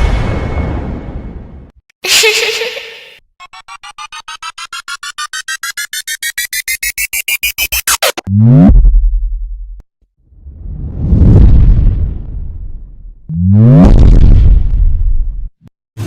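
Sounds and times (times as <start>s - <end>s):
rapid rising beeps: 3.4s - 8.6s
deep bass boom: 8.6s - 9.8s, 10.5s - 15.5s.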